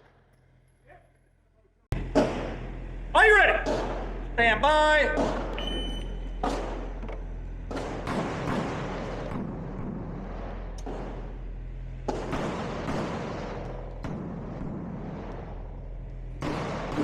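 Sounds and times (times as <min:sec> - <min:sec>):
pistol shots with reverberant tail: 0:02.0 - 0:02.8, 0:03.6 - 0:04.4, 0:05.2 - 0:07.0, 0:07.6 - 0:17.0.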